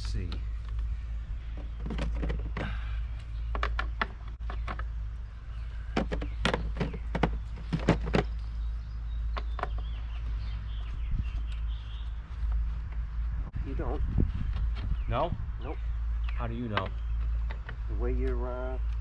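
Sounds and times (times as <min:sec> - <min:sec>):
steady low rumble: 0:00.0 - 0:19.0
clicks and knocks of engine parts: 0:01.5 - 0:04.9, 0:05.9 - 0:10.3, 0:16.2 - 0:19.0.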